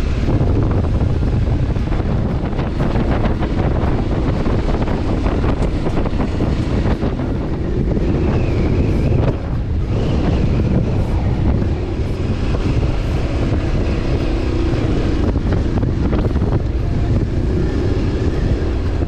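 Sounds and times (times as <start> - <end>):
motorcycle engine running: 0.0 - 19.0
wind buffeting microphone: 0.0 - 19.0.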